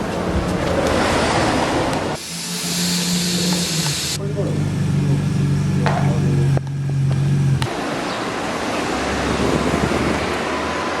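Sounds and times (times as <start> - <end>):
vehicle engine humming: 0.0 - 10.9
steady rushing road noise: 0.0 - 11.0.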